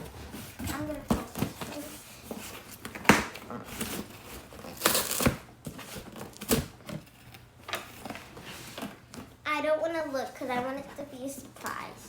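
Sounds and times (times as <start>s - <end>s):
packaging crinkling and rustling: 0.0s - 9.4s.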